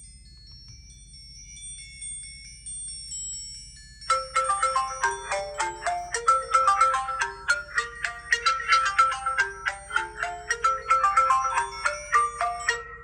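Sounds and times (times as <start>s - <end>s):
faint high chiming notes: 0.0s - 13.0s
phone ringtone melody: 4.1s - 13.0s.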